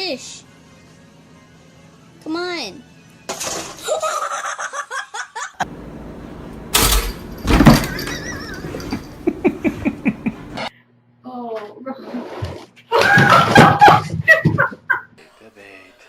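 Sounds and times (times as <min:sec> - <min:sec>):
person laughing: 0:08.0 - 0:10.7.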